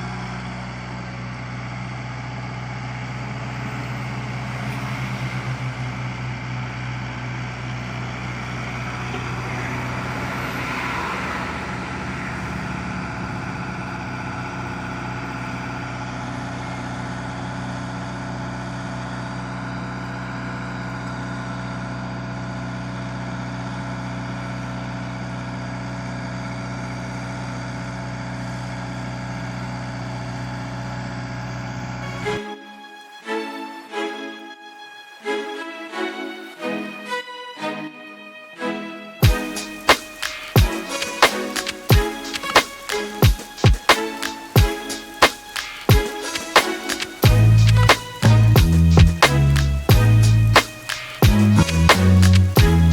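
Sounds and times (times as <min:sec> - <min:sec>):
excavator diesel engine running: 0:00.0 - 0:32.4, 0:39.2 - 0:52.9
music: 0:32.0 - 0:52.9.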